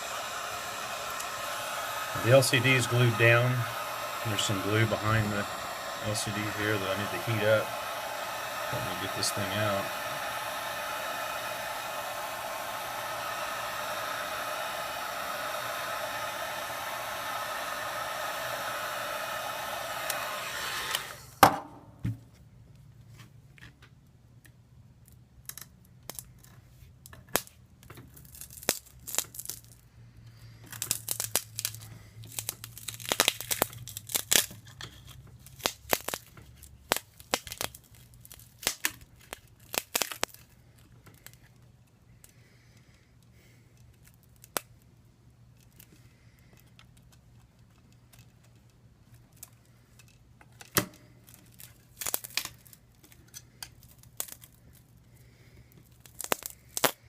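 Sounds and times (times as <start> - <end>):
hot-air tool blowing: 0.0 - 21.4, 55.2 - 57.0
adhesive crackling and tearing: 28.1 - 29.8, 30.7 - 41.4, 50.8 - 54.9, 55.9 - 57.0.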